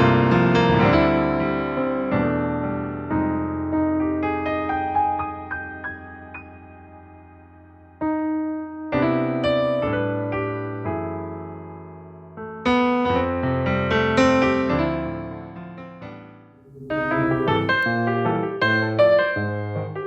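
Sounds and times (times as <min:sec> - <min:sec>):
digital piano chords: 0:16.6 - 0:17.9.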